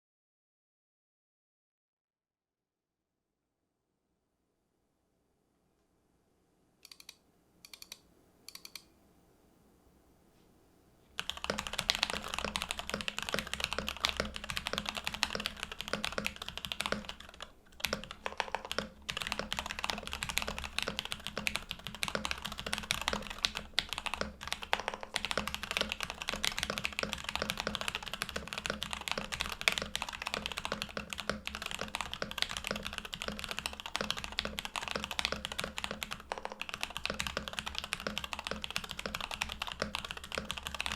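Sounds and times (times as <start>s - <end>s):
mechanical keyboard typing: 6.8s - 8.8s, 11.2s - 40.9s.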